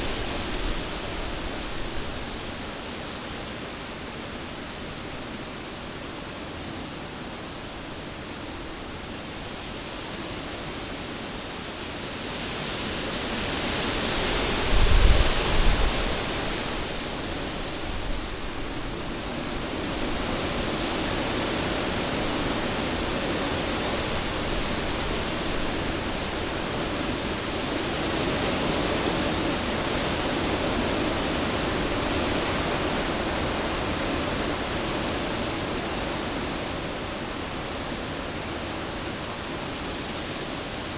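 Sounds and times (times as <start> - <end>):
strong wind blowing: 14.0 - 37.8
low rumbling wind buffets: 14.0 - 40.5.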